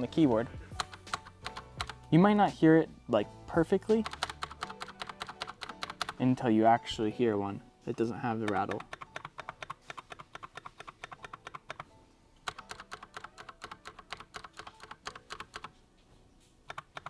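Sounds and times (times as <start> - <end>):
mechanical keyboard keys clicking: 0.4 - 2.0, 3.9 - 6.3, 8.4 - 15.8, 16.6 - 17.0.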